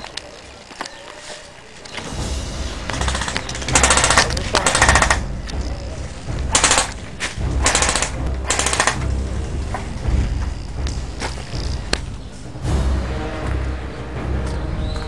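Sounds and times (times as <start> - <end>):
airsoft guns firing bursts: 2.9 - 5.3, 6.5 - 7.0, 7.6 - 9.0.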